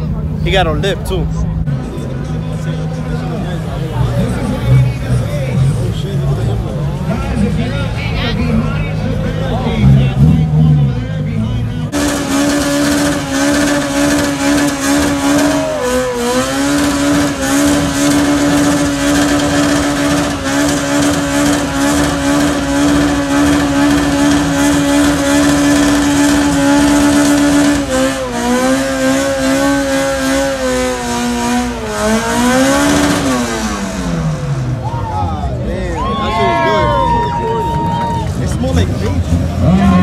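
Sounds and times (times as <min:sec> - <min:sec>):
car engine at high revs: 0:00.0 - 0:35.9, 0:36.7 - 0:40.0.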